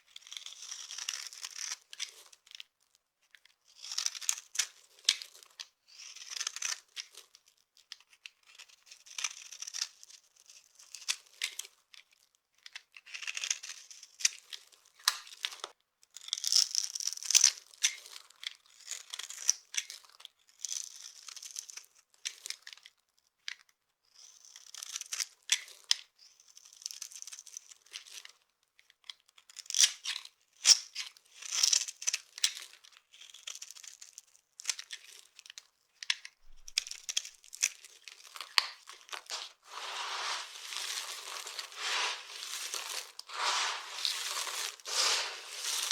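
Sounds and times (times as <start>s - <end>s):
brittle soap crunching: 36.5s - 45.9s.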